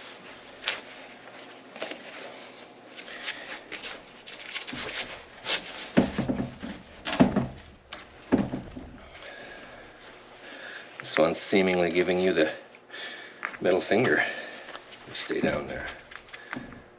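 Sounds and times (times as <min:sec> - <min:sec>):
knocks and scrapes: 0:04.6 - 0:09.2.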